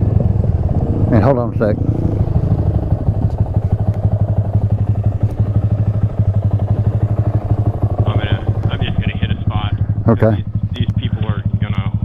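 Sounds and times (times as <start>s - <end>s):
motorcycle engine putter: 3.2s - 7.5s.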